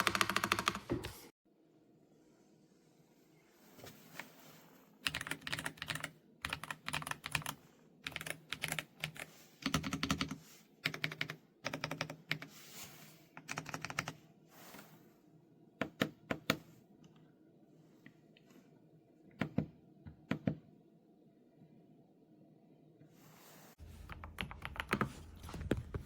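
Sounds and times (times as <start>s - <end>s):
mechanical keyboard typing: 0.0s - 1.2s, 5.0s - 12.5s, 13.4s - 14.2s, 24.0s - 25.2s.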